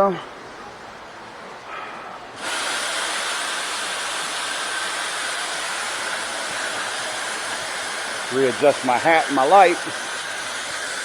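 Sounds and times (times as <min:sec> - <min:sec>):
vehicle lift hissing: 0:01.7 - 0:11.0.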